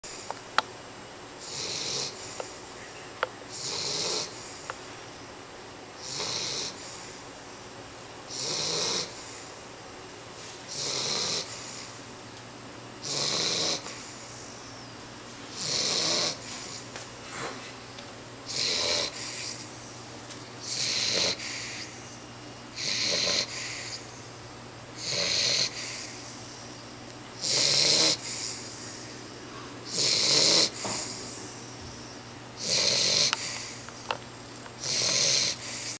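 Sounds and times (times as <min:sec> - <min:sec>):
dog snoring: 0:01.4 - 0:02.6, 0:03.5 - 0:04.7, 0:06.0 - 0:07.2, 0:08.3 - 0:09.6, 0:10.7 - 0:12.0, 0:13.0 - 0:14.9, 0:15.5 - 0:16.9, 0:18.5 - 0:20.0, 0:20.6 - 0:22.0, 0:22.8 - 0:24.2, 0:25.0 - 0:26.4, 0:27.4 - 0:29.2, 0:29.8 - 0:33.9, 0:34.8 - 0:35.9.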